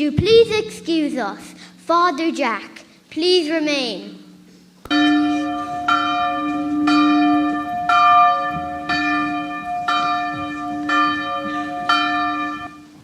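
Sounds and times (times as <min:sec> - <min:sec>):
church bell tolling: 0:04.2 - 0:13.0.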